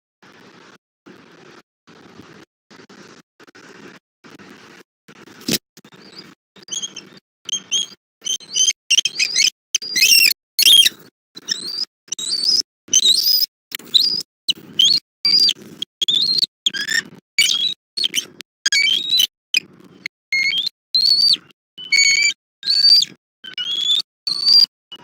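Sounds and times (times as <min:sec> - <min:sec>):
eagle chittering squeals: 0:06.0 - 0:14.2, 0:14.8 - 0:19.3, 0:20.4 - 0:24.7.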